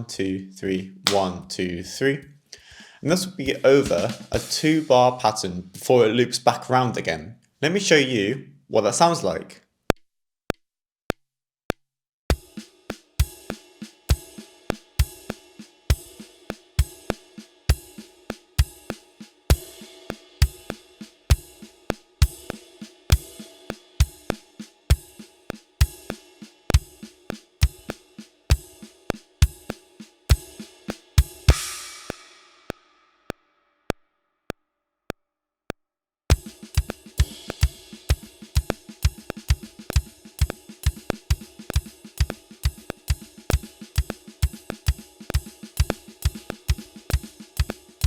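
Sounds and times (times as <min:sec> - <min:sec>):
drum kit groove: 0:00.0 - 0:09.4, 0:12.3 - 0:32.9, 0:36.3 - 0:48.0
cymbal ringing out: 0:30.3 - 0:33.0, 0:36.3 - 0:48.0.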